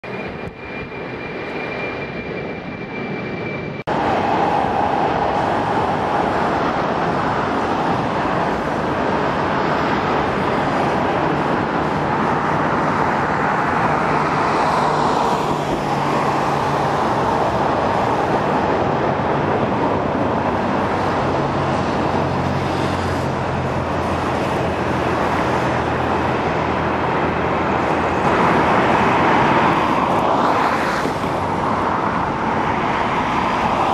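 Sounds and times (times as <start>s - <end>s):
jet engine rush: 0.0s - 33.9s
faint high whine: 0.1s - 6.2s.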